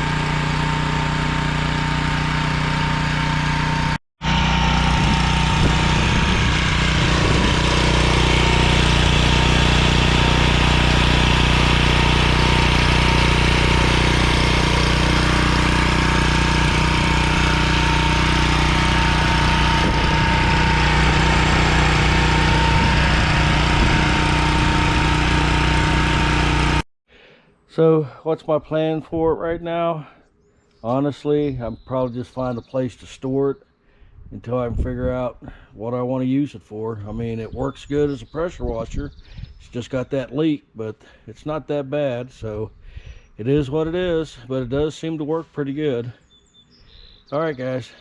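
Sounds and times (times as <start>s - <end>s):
pressure washer engine running: 0.0s - 26.8s.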